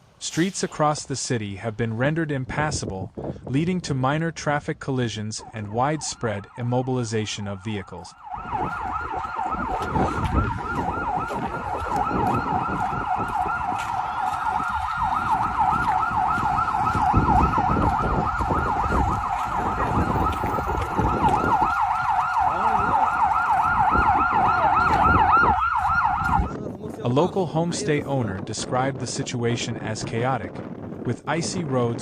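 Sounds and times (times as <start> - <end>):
low traffic rumble: 0.0 - 32.0
siren yelping: 5.4 - 26.6.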